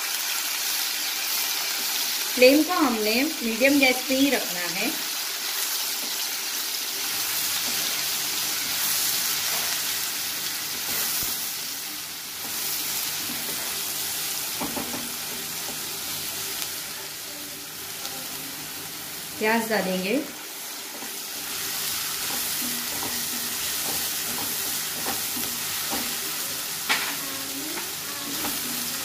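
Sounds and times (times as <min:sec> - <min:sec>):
ginger and garlic sizzling in oil: 0:00.0 - 0:29.0.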